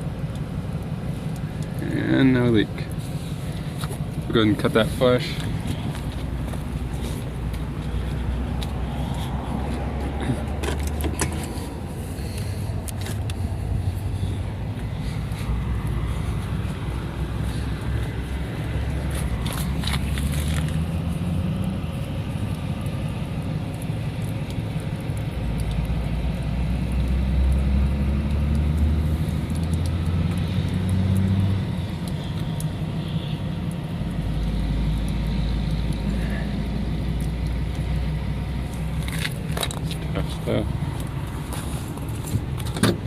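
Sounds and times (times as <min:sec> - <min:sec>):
low rumble of vehicles: 0:00.0 - 0:43.0
sharp clicks and scraping: 0:02.9 - 0:13.4, 0:19.1 - 0:20.9, 0:38.6 - 0:43.0.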